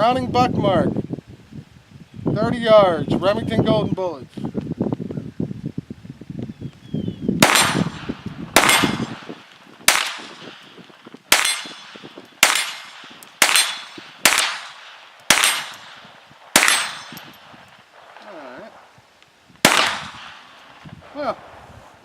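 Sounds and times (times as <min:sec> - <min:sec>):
pistol shots with ringing echo: 0:07.4 - 0:17.5, 0:19.6 - 0:20.6.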